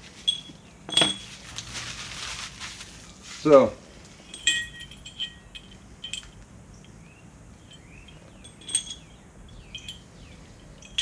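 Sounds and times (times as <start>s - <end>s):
metal parts clinking: 0.2s - 1.4s, 4.3s - 6.4s, 7.6s - 10.1s, 10.8s - 11.0s
faint bird chirps: 6.7s - 11.0s.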